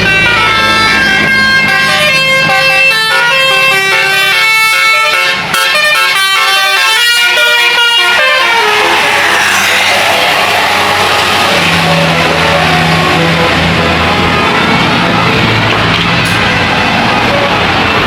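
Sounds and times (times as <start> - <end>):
multi-tone air horn melody: 0.0 - 15.4
steady rush of noise: 7.7 - 18.0.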